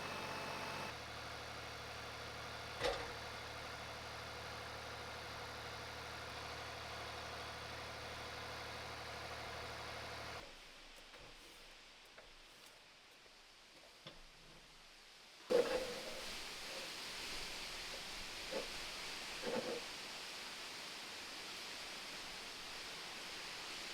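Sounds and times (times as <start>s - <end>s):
small gasoline engine running: 0.0s - 10.4s.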